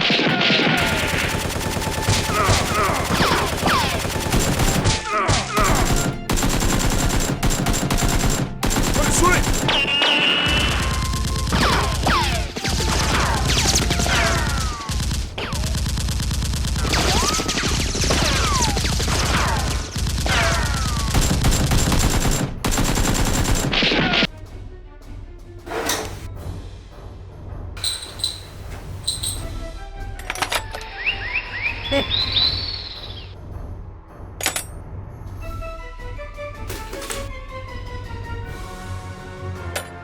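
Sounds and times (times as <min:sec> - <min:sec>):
rapid gunfire: 0:00.0 - 0:24.3
falling whistling tones: 0:27.8 - 0:29.6, 0:30.9 - 0:33.4.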